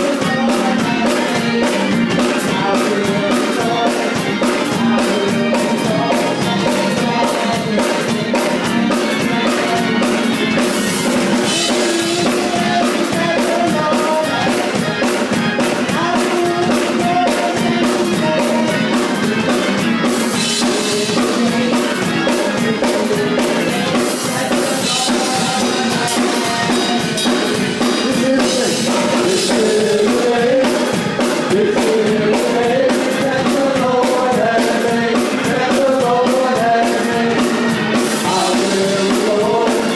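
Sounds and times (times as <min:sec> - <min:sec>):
drum kit steady beat: 0:00.0 - 0:39.9
worship singing: 0:00.0 - 0:39.9.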